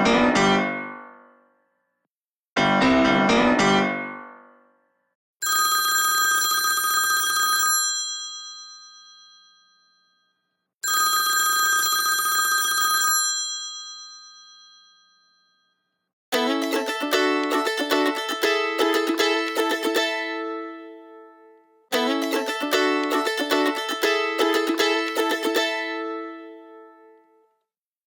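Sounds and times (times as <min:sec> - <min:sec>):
telephone bell ringtone: 0:05.4 - 0:16.0
plucked string ringtone: 0:16.4 - 0:27.3.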